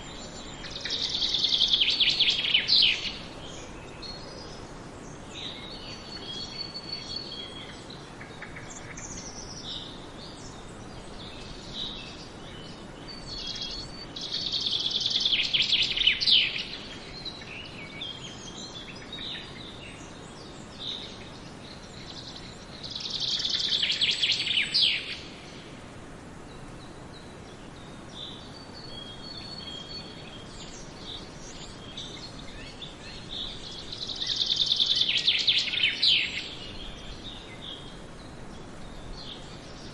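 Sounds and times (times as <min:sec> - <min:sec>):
birds chirping softly: 0:00.0 - 0:39.9
faint steady hiss: 0:00.0 - 0:39.9
bird rapid trilling song: 0:28.4 - 0:37.9.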